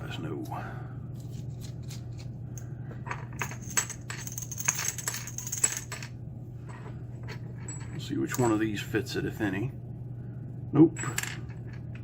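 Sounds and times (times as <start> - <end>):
metal screwdriver bits clattering: 3.1 - 6.1.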